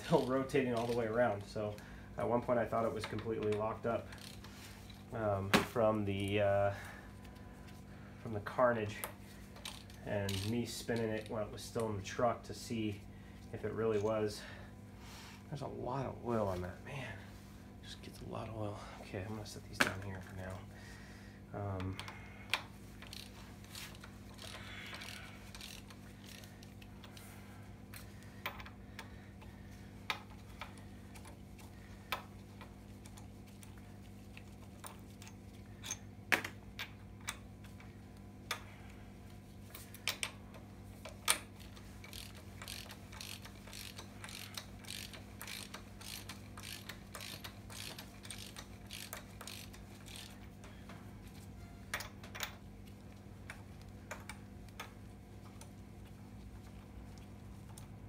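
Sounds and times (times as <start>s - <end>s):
steady low hum: 0.0s - 58.0s
ratchet wrench clicking: 4.1s - 4.5s, 21.9s - 27.2s, 41.2s - 50.4s.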